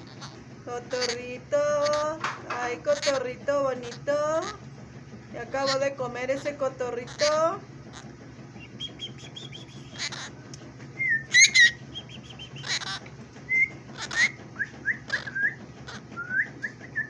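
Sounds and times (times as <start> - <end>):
parrot squawking: 0.0 - 4.6, 5.5 - 10.4, 11.1 - 16.5
parrot whistled chirps: 8.6 - 10.3, 11.0 - 17.0.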